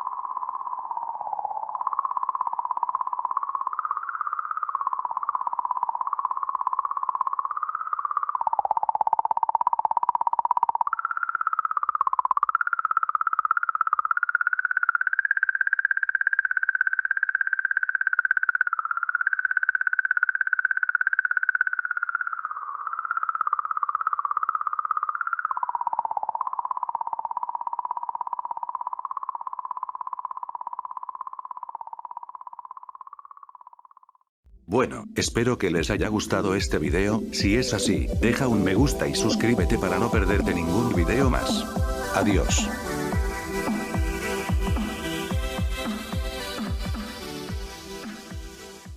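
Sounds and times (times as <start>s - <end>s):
buzzy electronic drone: 35.7s - 48.9s.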